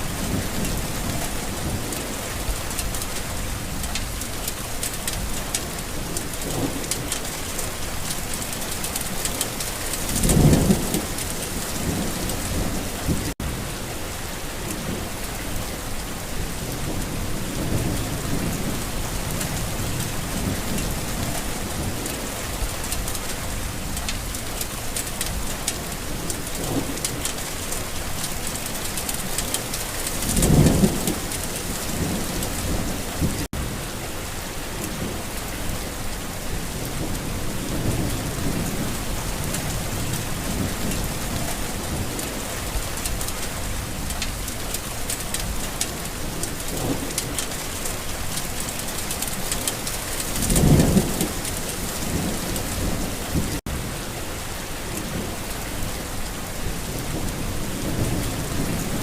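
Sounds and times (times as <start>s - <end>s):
steady rain falling: 0.0s - 59.0s
thunder rumbling: 5.9s - 13.8s, 16.2s - 33.9s, 34.7s - 53.9s.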